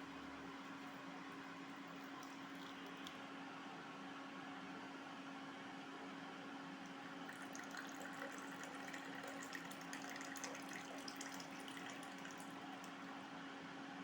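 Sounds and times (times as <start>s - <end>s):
liquid pouring: 0.6s - 3.2s, 7.2s - 13.2s.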